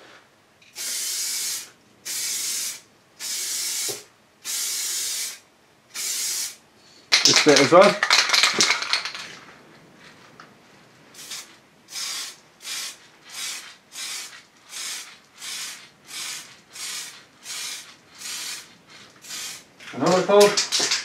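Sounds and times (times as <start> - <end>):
aerosol spray hiss: 0.7 - 6.6, 11.2 - 19.7.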